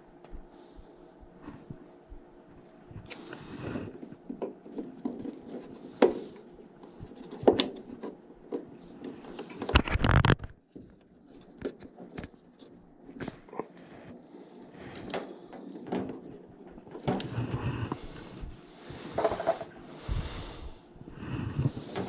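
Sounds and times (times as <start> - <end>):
tools clicking and scraping: 19.1 - 19.7.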